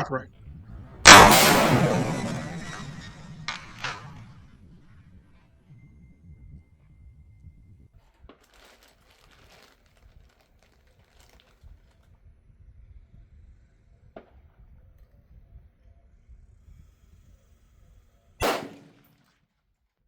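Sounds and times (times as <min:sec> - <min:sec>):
low rumble: 0:00.0 - 0:07.8
rustling and crinkling handling noise: 0:08.2 - 0:12.0.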